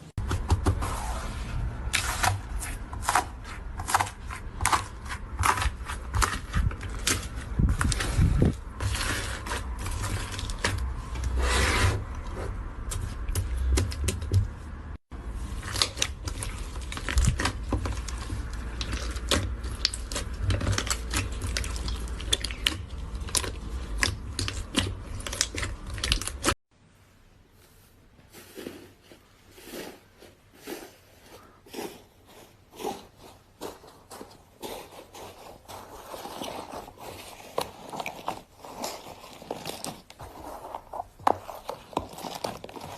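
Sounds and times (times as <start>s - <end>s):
slime crackling and popping: 15.6s - 26.5s.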